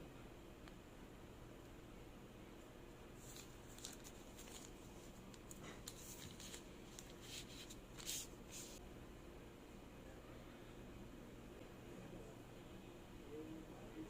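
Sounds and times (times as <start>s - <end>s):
low room hum: 0.0s - 14.0s
hands rustling and clicking things: 3.2s - 8.8s.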